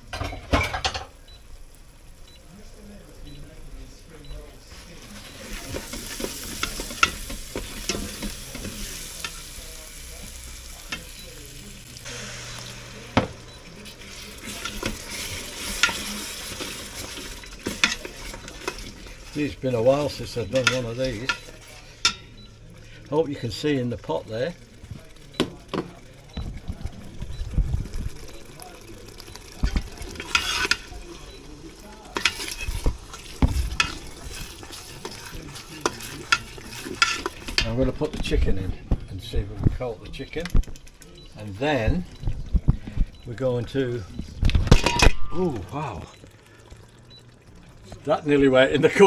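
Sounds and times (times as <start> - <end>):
sauce sizzling in a pot: 1.1 - 26.2, 27.7 - 38.4.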